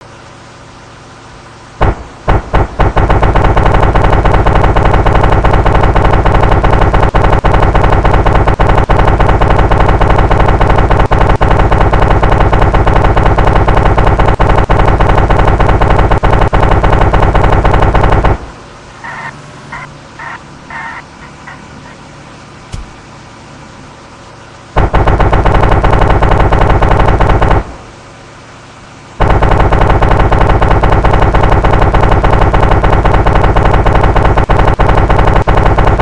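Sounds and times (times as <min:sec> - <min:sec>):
two-stroke engine running: 0:00.0 - 0:28.6, 0:29.2 - 0:36.0.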